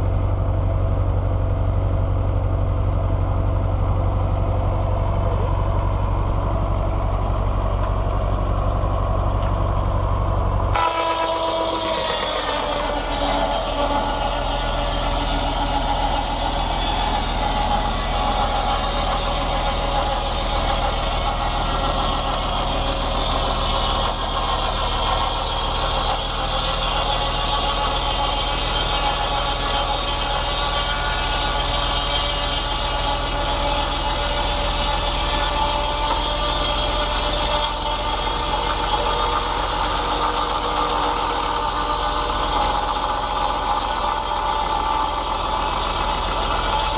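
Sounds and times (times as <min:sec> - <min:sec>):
circular saw blade whine: 0:00.0 - 0:46.9
tractor diesel engine running: 0:00.0 - 0:46.9.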